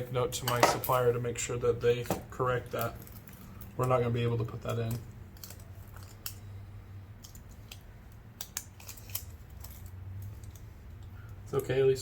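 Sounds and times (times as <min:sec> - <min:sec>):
low steady hum: 0:00.0 - 0:12.0
small tools and plastic parts clicking: 0:02.7 - 0:06.6, 0:07.2 - 0:11.8.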